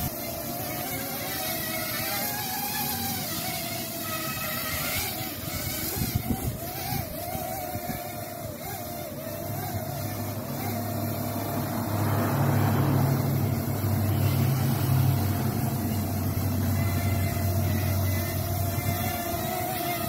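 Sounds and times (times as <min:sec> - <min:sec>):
quadcopter propellers whining: 0:00.0 - 0:20.0
wind rumble on microphone: 0:05.4 - 0:08.2.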